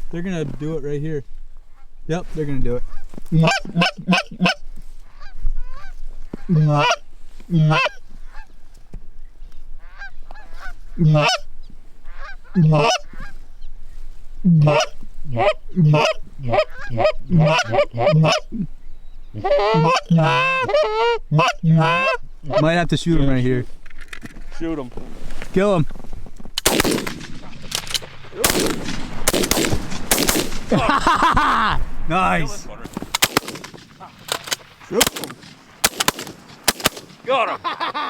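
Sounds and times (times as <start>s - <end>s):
geese honking: 2.8s - 8.6s, 9.8s - 13.5s, 14.5s - 18.6s, 19.3s - 22.7s.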